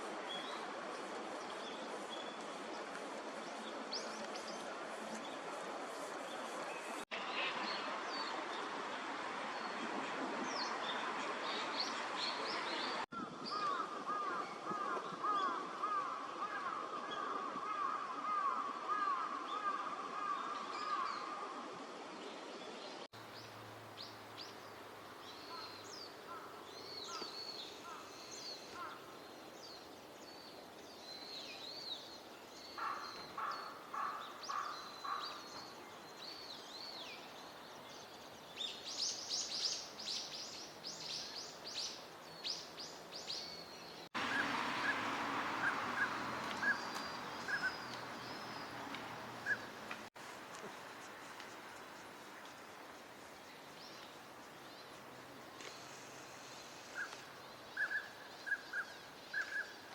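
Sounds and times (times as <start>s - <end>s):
outdoor noise: 0.0s - 59.9s
small birds twittering: 23.2s - 59.9s.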